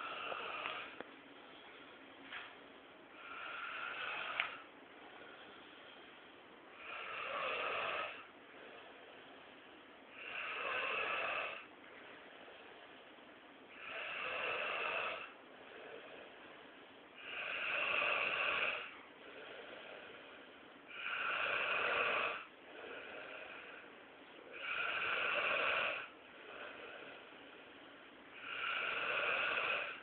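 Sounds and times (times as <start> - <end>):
person snoring: 0.0 - 1.0, 3.2 - 4.6, 6.8 - 9.3, 10.1 - 11.7, 13.7 - 16.5, 17.2 - 23.8, 24.5 - 27.3, 28.4 - 30.0
quiet breathing: 0.0 - 30.0.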